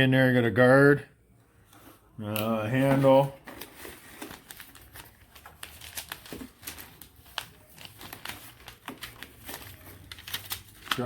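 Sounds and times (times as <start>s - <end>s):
paper and plastic crinkling: 2.7s - 11.0s.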